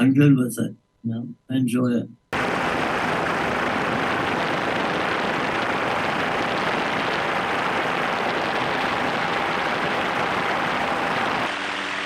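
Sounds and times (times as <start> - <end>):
helicopter in flight: 2.4 - 12.0.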